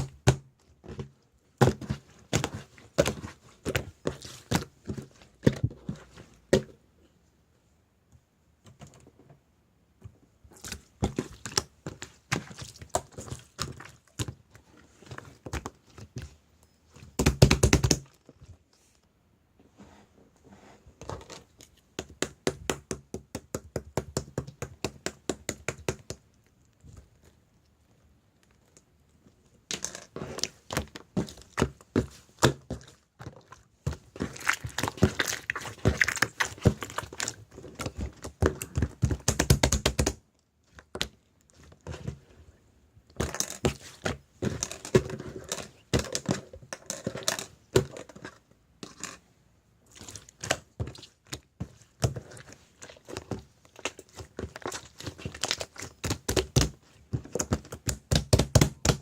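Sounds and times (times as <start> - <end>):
slime squished by hand: 30.8 - 40.1.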